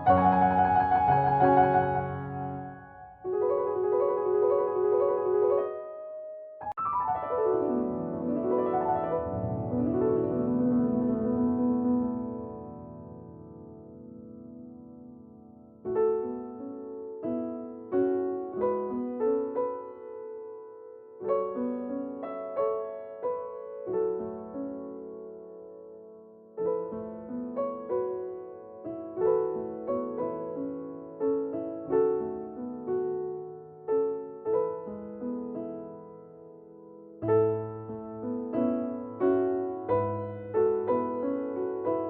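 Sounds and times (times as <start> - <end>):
soft piano music: 0.0 - 42.0.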